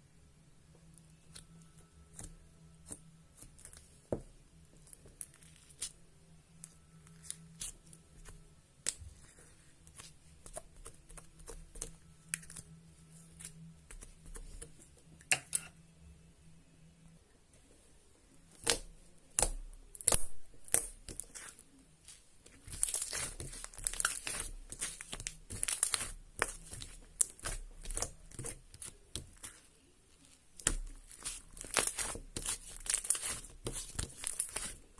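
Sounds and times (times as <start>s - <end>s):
slime clicking and squelching: 6.6s - 15.7s, 18.5s - 34.9s.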